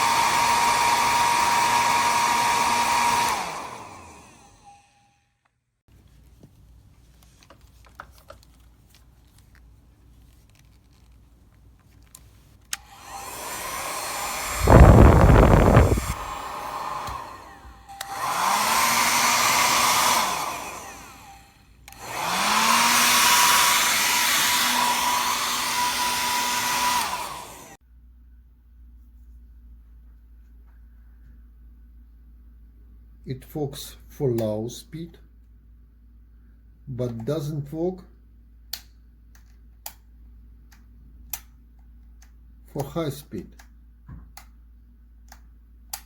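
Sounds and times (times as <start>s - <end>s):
hair dryer blowing air: 0.0s - 4.8s, 12.8s - 27.8s
hair dryer switch click: 12.7s - 21.1s, 21.9s - 22.4s.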